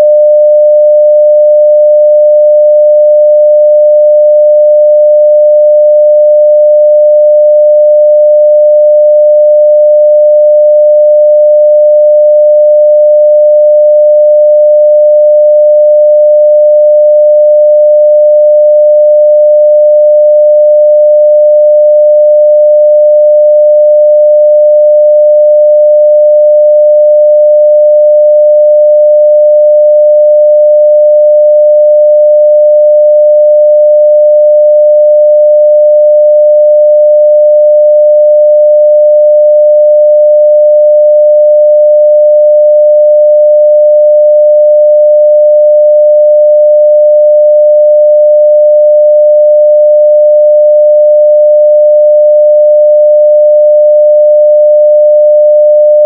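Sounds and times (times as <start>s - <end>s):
sine-wave test tone: 0.0s - 56.0s.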